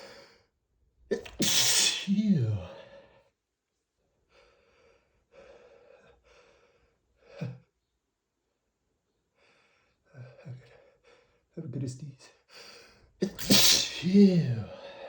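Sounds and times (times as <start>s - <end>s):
person gasping: 13.3s - 15.0s.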